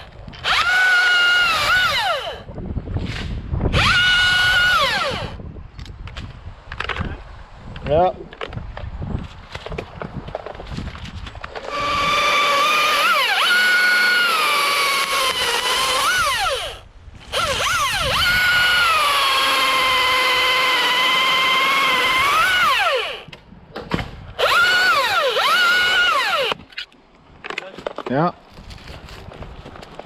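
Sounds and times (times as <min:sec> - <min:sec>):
chainsaw revving: 0:00.4 - 0:02.5, 0:03.8 - 0:05.4, 0:11.7 - 0:23.3, 0:24.4 - 0:26.6.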